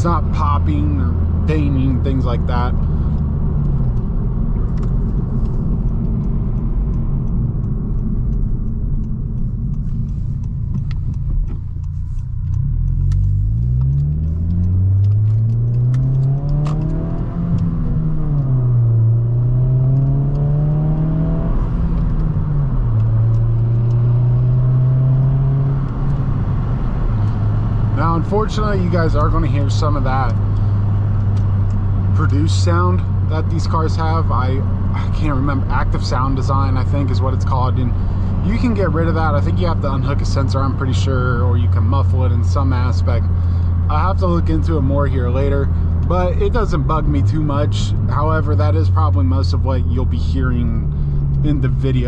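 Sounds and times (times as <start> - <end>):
car engine revving in cabin: 0.0 - 52.0.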